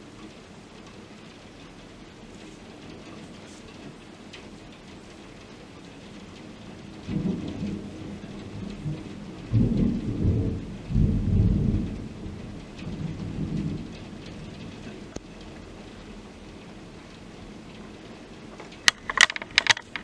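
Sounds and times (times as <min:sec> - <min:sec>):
heavy rain: 0:00.0 - 0:20.0
thunder rumbling: 0:06.0 - 0:19.2.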